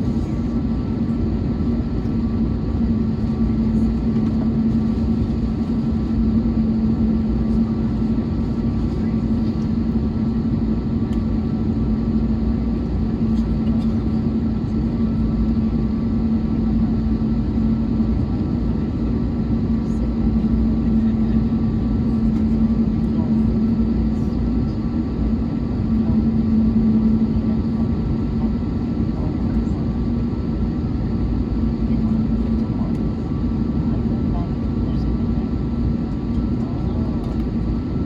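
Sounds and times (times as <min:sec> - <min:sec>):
aircraft cabin rumble and hum: 0:00.0 - 0:38.0.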